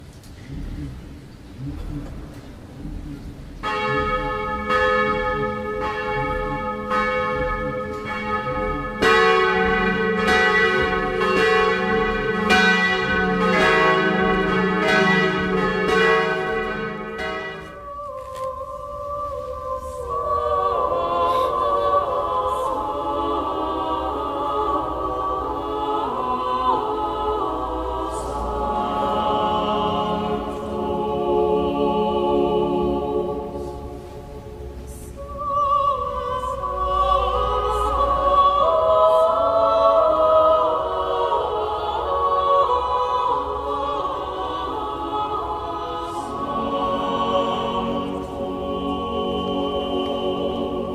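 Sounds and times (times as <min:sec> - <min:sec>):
choir singing sacred music: 0:00.0 - 0:50.9.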